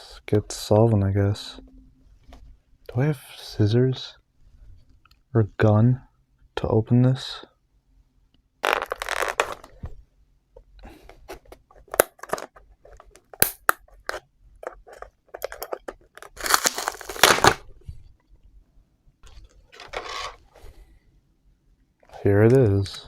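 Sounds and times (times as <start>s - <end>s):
plastic crinkling: 8.6s - 9.7s, 14.9s - 17.8s
plastic packaging ripping: 8.6s - 9.7s, 16.3s - 17.7s.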